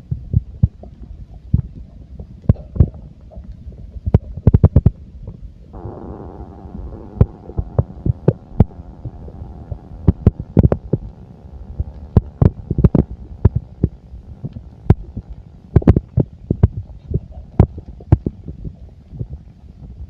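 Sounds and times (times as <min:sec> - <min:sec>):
steady low hum: 0:00.0 - 0:20.0
stomach pops and knocks: 0:00.1 - 0:05.4, 0:11.8 - 0:20.0.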